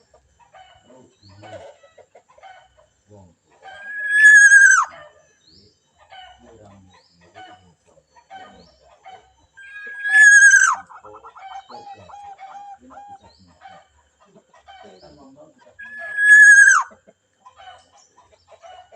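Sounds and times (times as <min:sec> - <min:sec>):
rooster crowing: 0:03.8 - 0:04.9, 0:09.6 - 0:10.9, 0:15.8 - 0:16.9.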